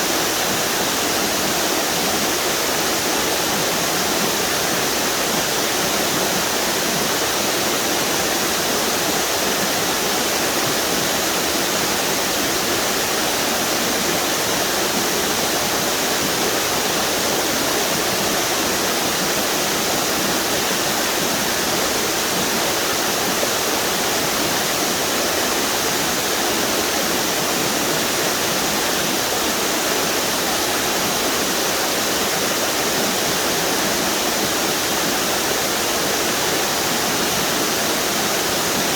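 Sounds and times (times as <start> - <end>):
waterfall rushing: 0.0 - 38.9.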